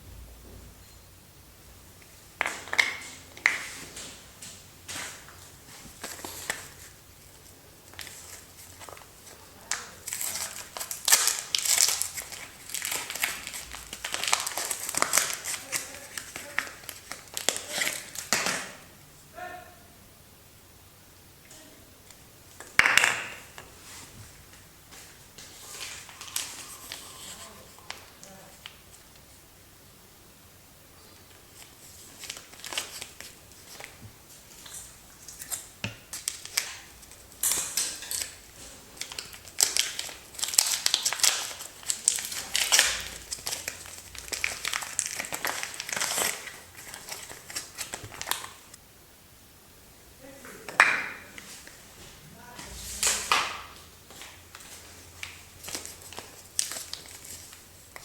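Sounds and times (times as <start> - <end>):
paper wrapper crinkling and tearing: 4.9 - 18.7, 25.0 - 29.0, 31.3 - 48.8, 52.6 - 58.0.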